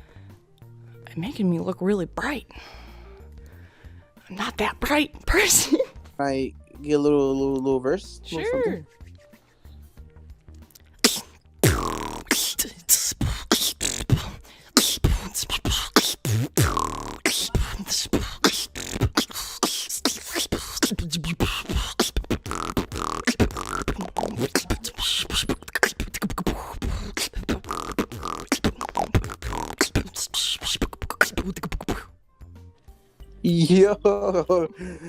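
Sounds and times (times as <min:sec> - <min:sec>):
woman beatboxing: 0:08.3 - 0:08.9, 0:11.0 - 0:32.1.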